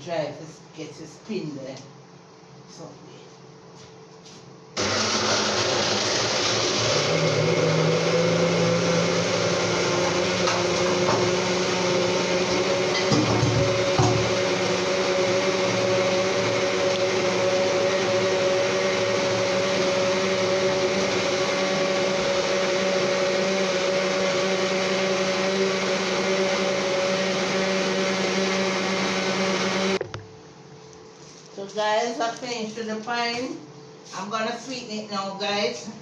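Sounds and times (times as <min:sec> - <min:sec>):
electric blender running: 0:04.8 - 0:30.0.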